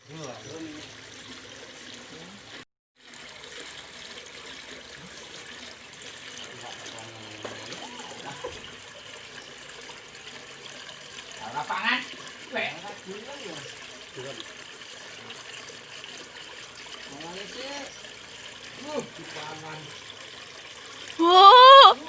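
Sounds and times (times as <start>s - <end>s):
trickle of running water: 0.0s - 21.2s
faint voices: 21.2s - 22.0s.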